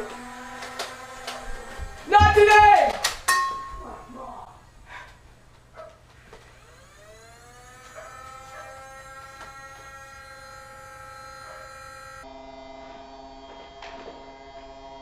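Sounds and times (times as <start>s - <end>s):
toy blaster flywheel whine: 0.0s - 2.1s, 6.3s - 15.0s.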